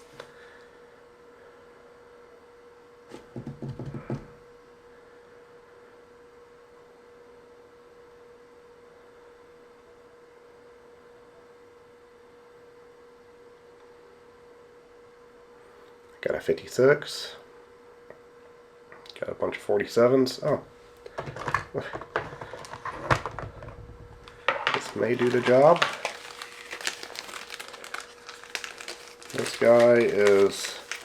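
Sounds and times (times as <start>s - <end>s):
faint high hum: 0.0s - 31.0s
electronic parts rattling in a box: 24.6s - 31.0s.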